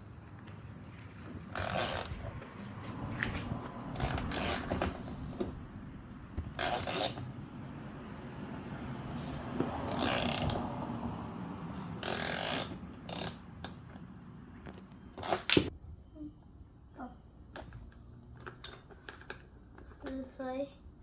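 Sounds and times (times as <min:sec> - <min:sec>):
toy wrench clicking: 0:01.6 - 0:02.2, 0:04.0 - 0:04.8, 0:06.6 - 0:07.2, 0:09.9 - 0:10.6, 0:12.0 - 0:13.8.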